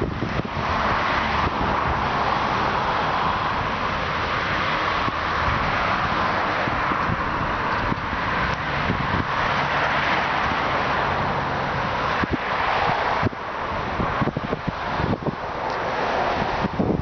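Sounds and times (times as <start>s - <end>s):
car running: 0.0s - 17.0s.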